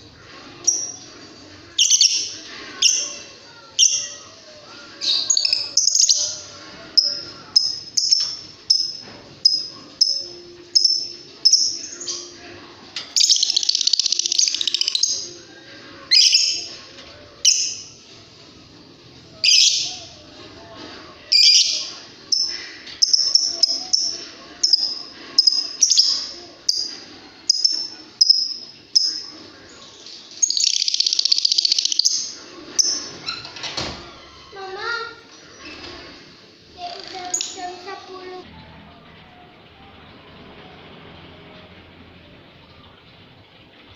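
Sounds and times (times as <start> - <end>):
bird chirping and trilling: 1.7 - 3.2, 5.0 - 12.4, 13.1 - 15.4, 16.1 - 16.8, 19.4 - 20.1, 29.9 - 33.5.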